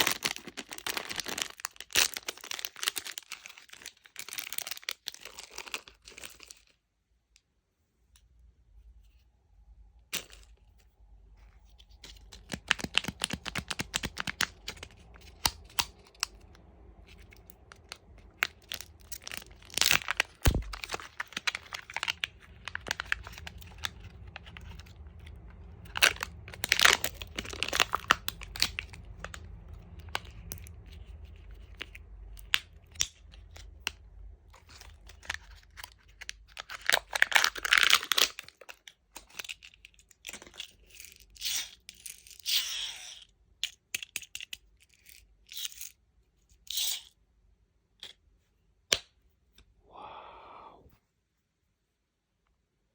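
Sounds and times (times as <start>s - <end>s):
plastic wrappers crinkling: 0.0s - 6.8s, 11.8s - 42.3s.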